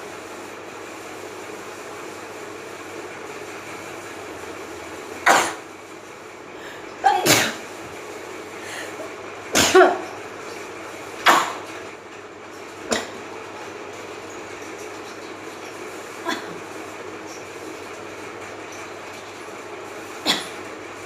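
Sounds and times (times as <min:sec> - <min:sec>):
woman sneezing: 0:07.0 - 0:07.6, 0:09.6 - 0:10.0, 0:16.2 - 0:16.6.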